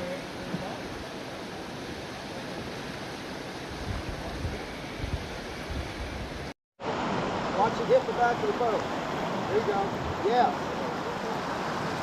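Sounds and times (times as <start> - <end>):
river current rushing: 0.0 - 12.0
wind buffeting microphone: 3.7 - 6.5.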